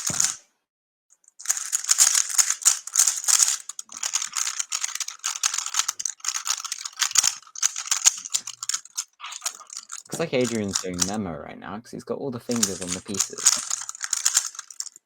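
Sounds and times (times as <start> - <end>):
puzzle cube clicking as turned: 0.0 - 0.4, 1.4 - 11.2, 12.5 - 15.0.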